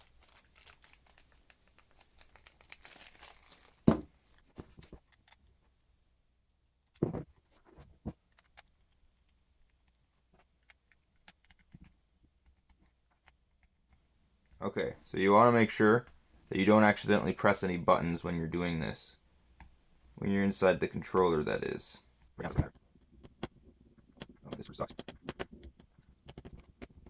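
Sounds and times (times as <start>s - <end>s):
plastic packaging crinkling: 0.0s - 5.3s.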